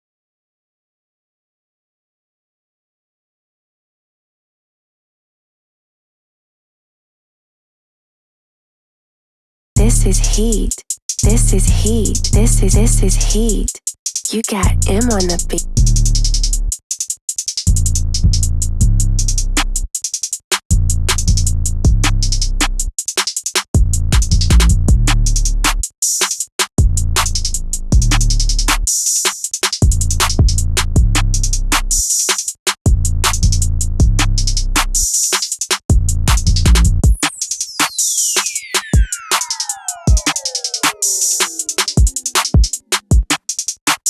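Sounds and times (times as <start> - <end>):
deep bass notes: 9.8 - 10.7, 11.3 - 13.6, 14.6 - 16.7, 17.7 - 19.8, 20.7 - 22.9, 23.8 - 25.8, 26.8 - 28.9, 29.8 - 32.0, 32.9 - 35.0, 35.9 - 37.0
rapid hi-hat ticks and rolls: 9.8 - 14.4, 15.0 - 44.0
looped sample: 36.3 - 42.9.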